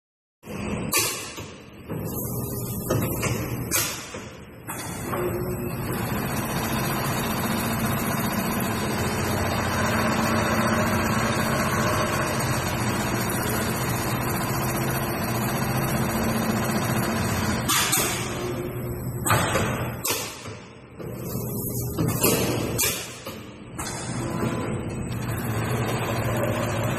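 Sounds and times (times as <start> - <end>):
short sharp machine sounds: 3.7 - 18.7
sewing machine running: 5.8 - 17.7, 25.1 - 26.9.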